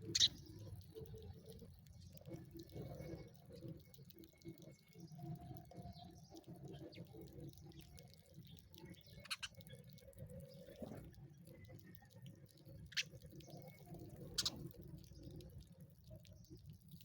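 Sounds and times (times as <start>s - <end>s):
sparrow chirping: 0.0s - 0.5s, 12.9s - 14.6s.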